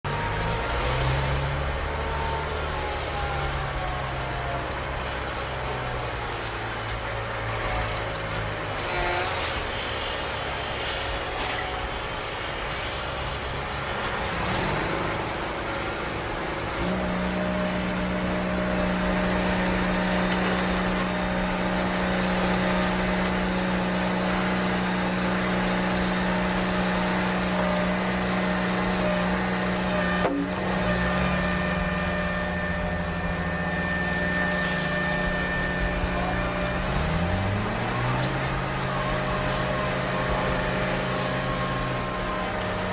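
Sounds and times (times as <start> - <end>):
motor drone with pitched hum: 16.7 - 42.9.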